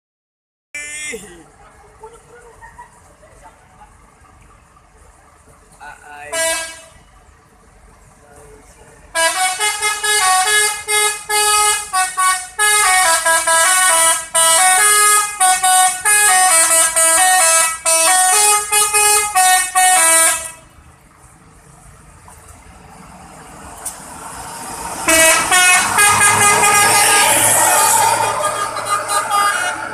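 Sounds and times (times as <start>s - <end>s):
multi-tone air horns playing tune: 6.3s - 6.9s, 9.2s - 20.7s, 25.1s - 29.9s.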